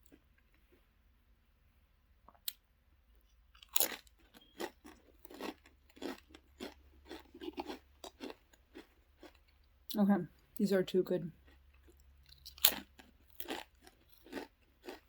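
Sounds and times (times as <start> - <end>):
person crunching potato crisps: 3.6 - 9.7, 11.4 - 15.0.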